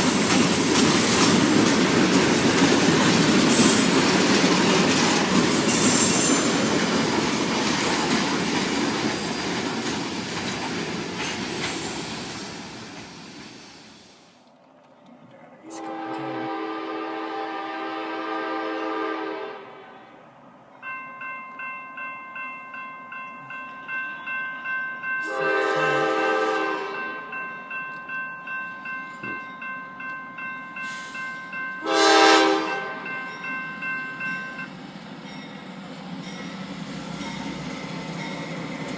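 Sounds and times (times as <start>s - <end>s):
crossing warning bells ringing: 0.0s - 11.8s, 20.6s - 38.9s
train rolling past: 0.0s - 38.9s
locomotive horn blasts: 15.7s - 19.9s, 25.2s - 27.2s, 31.8s - 33.1s.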